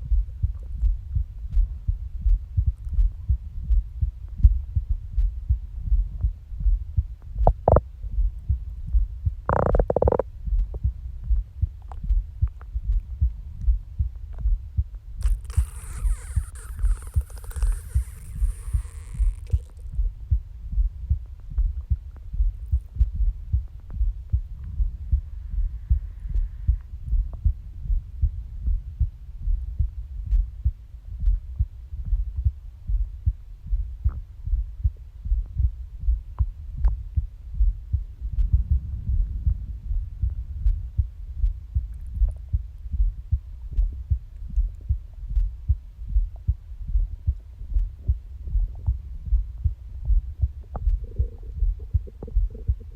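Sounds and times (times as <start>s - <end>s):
heartbeat thumps: 0.0s - 52.9s
stomach growl: 7.4s - 7.9s, 9.5s - 10.8s, 15.2s - 20.0s, 50.6s - 52.9s.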